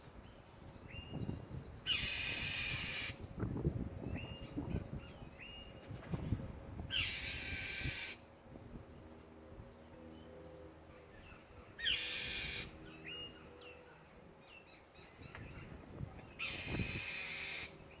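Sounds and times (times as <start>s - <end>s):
bird harsh raspy cries: 1.8s - 3.2s, 6.9s - 8.2s, 11.1s - 15.8s, 16.4s - 18.0s.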